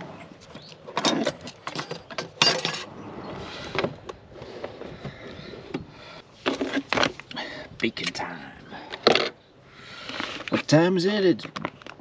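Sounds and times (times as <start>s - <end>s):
cooking gear clinking and knocking: 0.9s - 2.9s.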